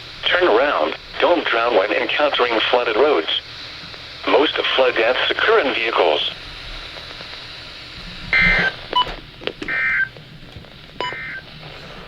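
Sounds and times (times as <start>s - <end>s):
harsh two-tone digital warble: 8.3s - 8.8s, 11.0s - 11.5s.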